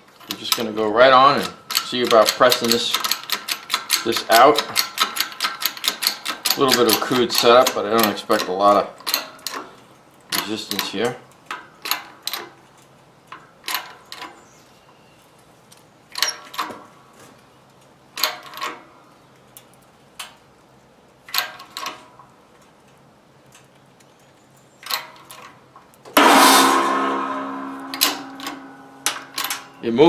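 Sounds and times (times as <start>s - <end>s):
shop press metallic clicks: 1.4s - 9.7s, 16.1s - 16.8s, 27.2s - 29.8s
loud metallic bang: 26.2s - 29.8s.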